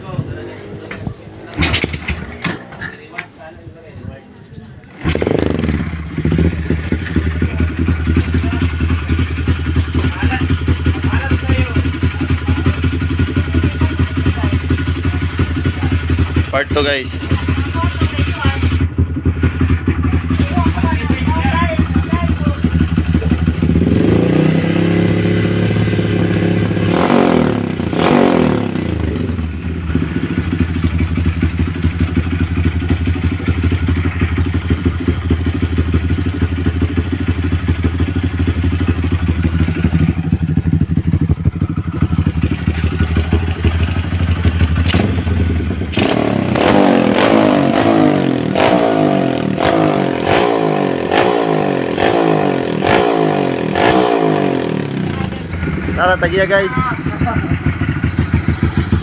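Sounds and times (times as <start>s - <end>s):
motorcycle engine revving and idling: 4.8s - 59.0s.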